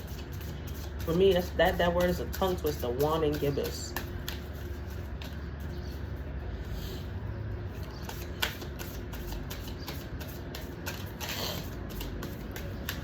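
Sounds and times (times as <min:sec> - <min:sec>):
cards being shuffled: 0:00.0 - 0:06.0, 0:07.8 - 0:13.0.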